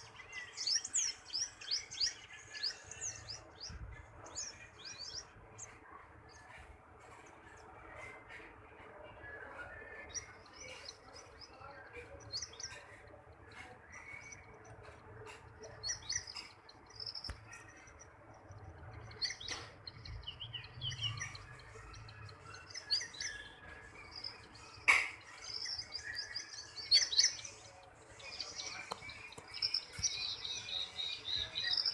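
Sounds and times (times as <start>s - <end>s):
small birds chirping: 0.0s - 31.9s.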